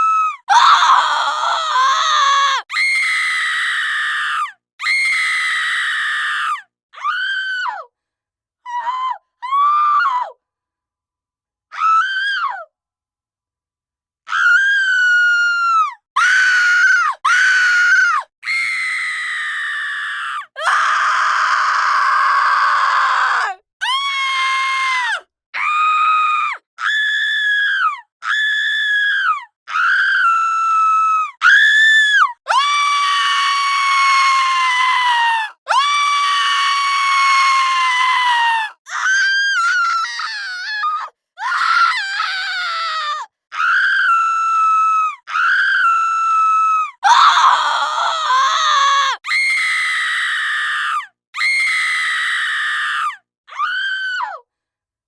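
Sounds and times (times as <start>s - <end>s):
women screaming: 0.5s - 4.1s, 47.0s - 50.8s.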